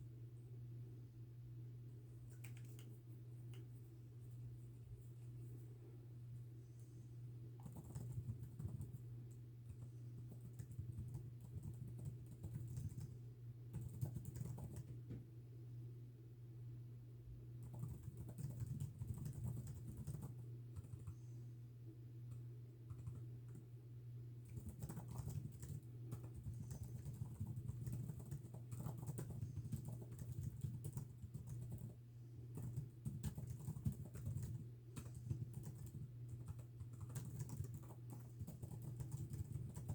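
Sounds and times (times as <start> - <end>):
steady low hum: 0.0 - 39.9
typing on computer keyboard: 2.3 - 3.6, 7.6 - 13.1, 13.7 - 15.0, 17.6 - 21.2, 22.9 - 23.6, 24.4 - 39.9.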